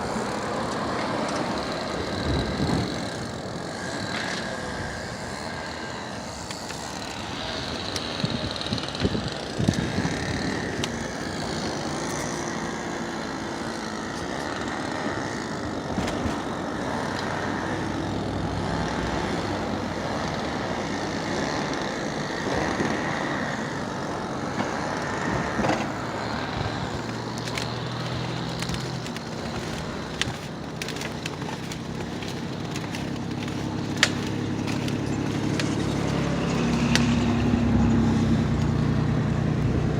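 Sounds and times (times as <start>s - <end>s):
vehicle running on road: 15.8s - 39.9s.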